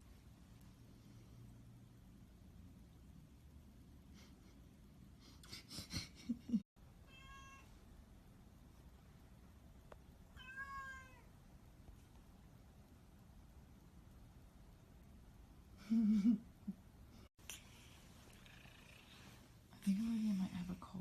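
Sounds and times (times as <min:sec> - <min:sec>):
cat meowing: 0:07.0 - 0:07.7, 0:10.4 - 0:11.3.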